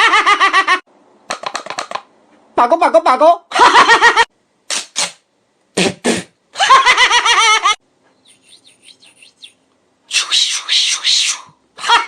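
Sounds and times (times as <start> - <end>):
faint high chirps: 8.0 - 9.6
high voice trilling: 10.1 - 11.6.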